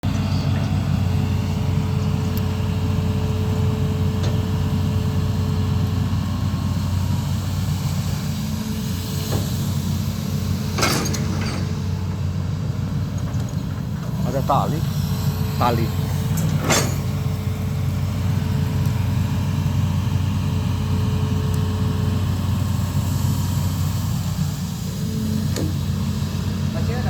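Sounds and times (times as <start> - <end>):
diesel engine running: 0.0 - 27.0.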